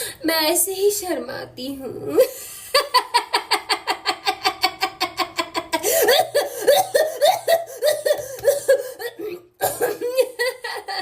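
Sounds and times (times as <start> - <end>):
person laughing: 2.2 - 11.0.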